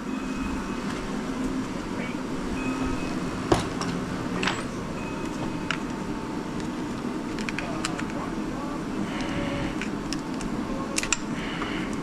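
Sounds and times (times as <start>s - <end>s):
droning hum: 0.0s - 12.0s
metallic tool clicks: 9.8s - 11.3s.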